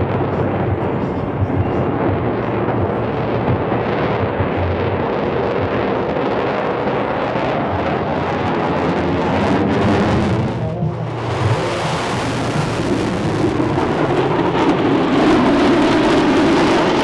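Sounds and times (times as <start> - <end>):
jet engine roar: 0.0 - 17.0.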